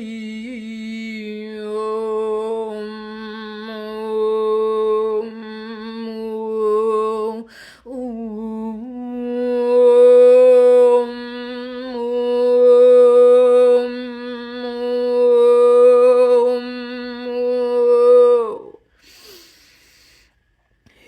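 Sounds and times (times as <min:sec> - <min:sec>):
woman breathing in: 0:07.5 - 0:07.9, 0:18.9 - 0:20.5.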